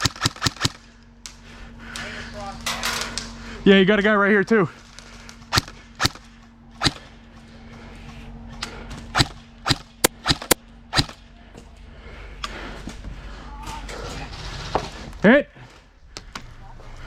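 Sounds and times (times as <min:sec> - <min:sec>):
airsoft gun shots: 0:00.0 - 0:00.8, 0:05.5 - 0:07.1, 0:09.2 - 0:11.2.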